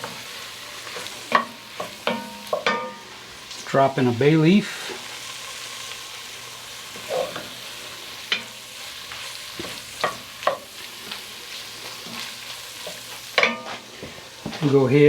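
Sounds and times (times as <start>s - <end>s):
vegetables sizzling in a pot: 0.0s - 15.0s
spoon knocking against pot: 1.4s - 3.0s.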